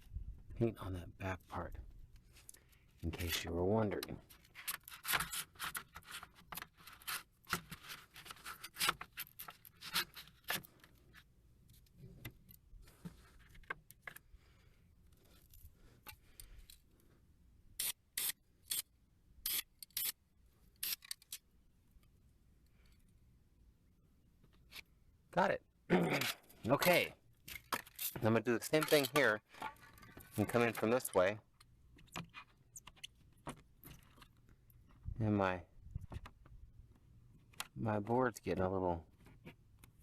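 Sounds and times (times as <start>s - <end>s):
board scraping and rattling: 26.7s - 31.1s.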